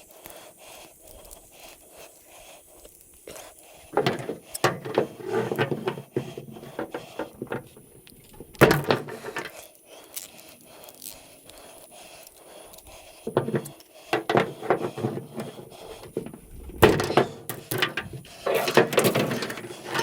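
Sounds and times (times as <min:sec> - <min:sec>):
scrap metal clanking: 0:03.9 - 0:09.5, 0:13.3 - 0:20.0.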